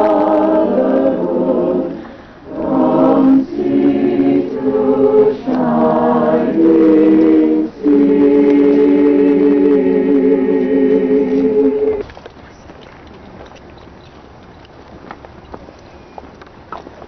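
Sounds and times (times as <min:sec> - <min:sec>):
choir singing sustained chords: 0:00.0 - 0:12.0
faint background noise: 0:00.0 - 0:17.0.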